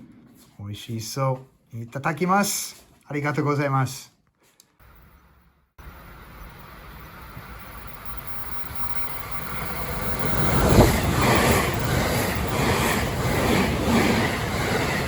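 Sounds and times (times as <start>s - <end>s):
fast vehicle rushing: 7.0s - 15.0s.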